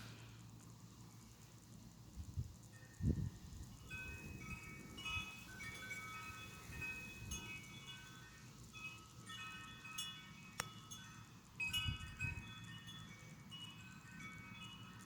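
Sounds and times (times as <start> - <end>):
wind chimes ringing: 2.6 - 15.0.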